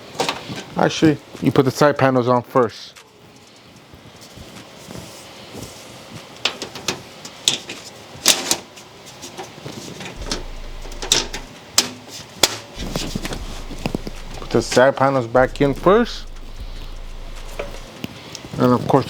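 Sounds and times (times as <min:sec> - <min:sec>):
computer case panels clicking: 0:10.2 - 0:14.9.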